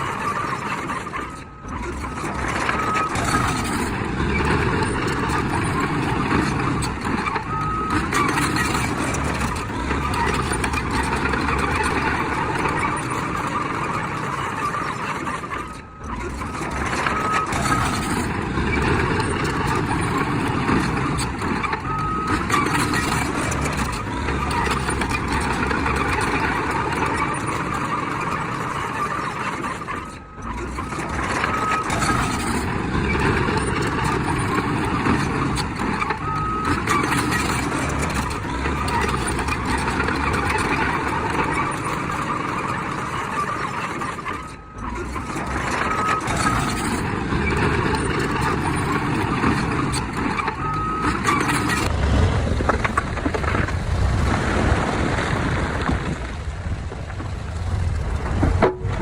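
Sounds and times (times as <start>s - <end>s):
earthmoving machinery running: 0.0s - 53.8s
reversing alarm beeps: 5.7s - 9.5s, 21.8s - 23.9s, 50.4s - 51.9s.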